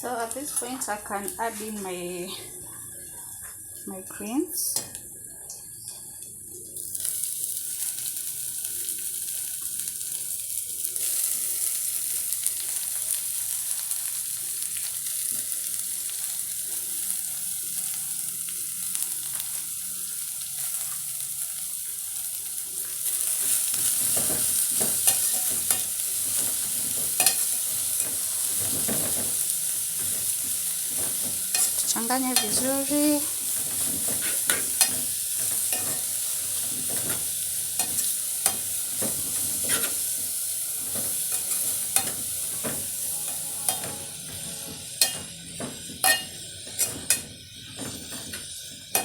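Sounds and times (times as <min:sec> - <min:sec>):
greens sizzling in hot oil: 0:00.0 - 0:02.3, 0:03.0 - 0:49.0
spoon scraping in pan: 0:23.4 - 0:29.5, 0:30.9 - 0:40.2, 0:40.8 - 0:49.0.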